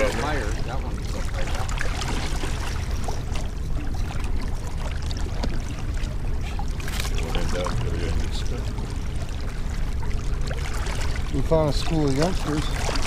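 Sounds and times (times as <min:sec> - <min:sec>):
boat motor rumbling: 0:00.0 - 0:13.0
water lapping against hull: 0:00.0 - 0:13.0.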